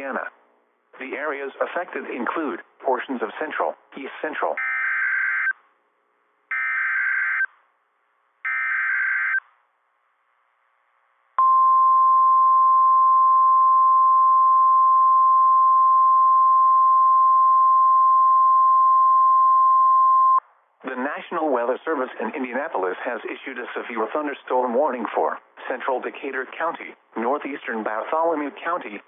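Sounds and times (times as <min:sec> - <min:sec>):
steady alarm tone: 0:06.5 - 0:07.5, 0:08.5 - 0:09.4.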